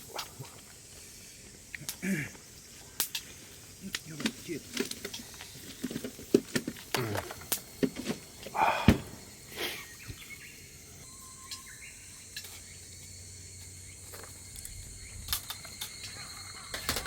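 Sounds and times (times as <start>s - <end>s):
faint high insect-like tone: 0.0s - 17.0s
small clicks and knocks: 3.9s - 8.2s, 14.1s - 17.0s.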